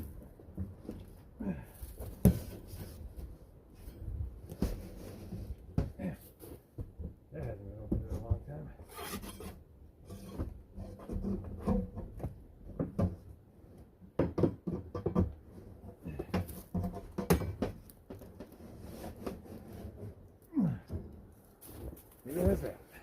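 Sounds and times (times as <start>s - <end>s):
wood scraping and rubbing: 8.9s - 11.8s, 18.1s - 20.3s.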